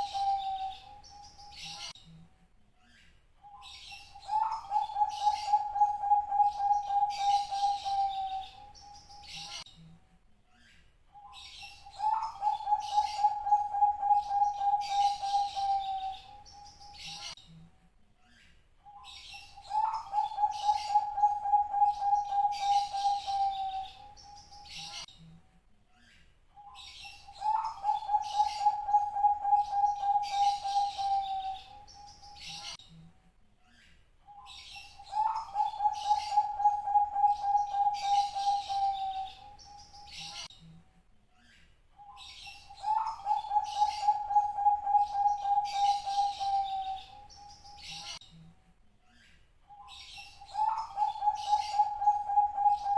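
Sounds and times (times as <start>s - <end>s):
dove cooing: 0.0s - 1.7s, 3.9s - 9.0s, 11.7s - 17.2s, 19.6s - 24.2s, 27.2s - 31.9s, 34.8s - 40.3s, 42.7s - 48.0s, 50.4s - 52.9s
small birds chirping: 0.0s - 52.9s.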